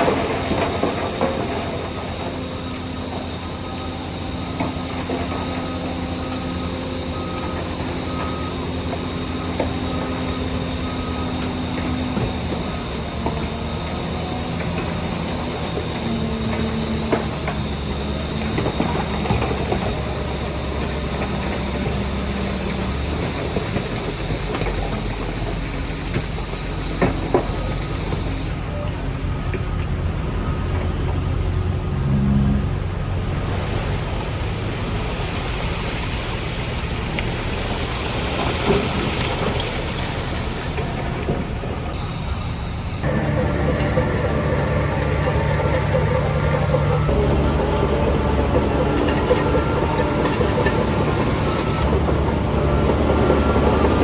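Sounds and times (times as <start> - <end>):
heavy diesel machinery running: 0.0 - 54.0.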